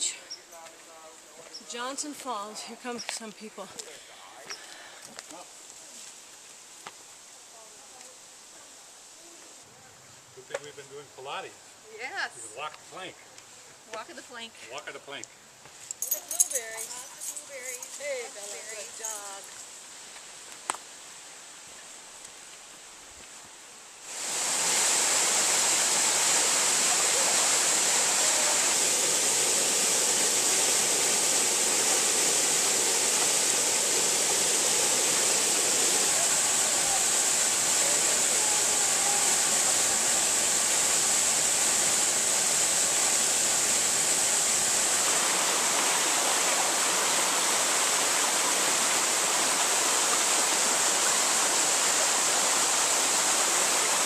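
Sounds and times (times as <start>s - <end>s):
waterfall roaring: 24.0s - 54.0s.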